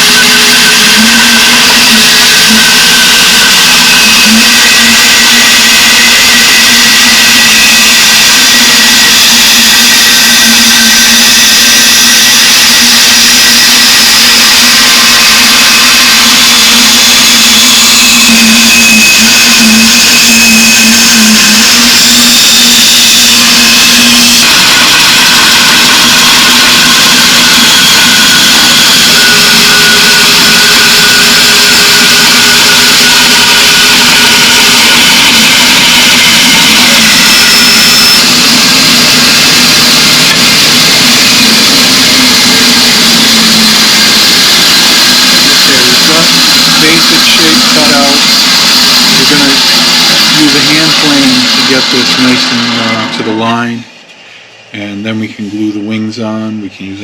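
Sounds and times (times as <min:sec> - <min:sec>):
power tool motor running: 0:00.0 - 0:53.6.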